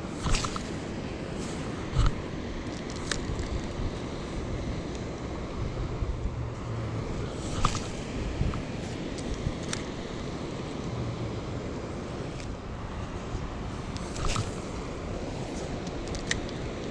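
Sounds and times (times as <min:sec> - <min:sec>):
wind buffeting microphone: 0:00.0 - 0:16.9
river water rushing: 0:06.3 - 0:16.9.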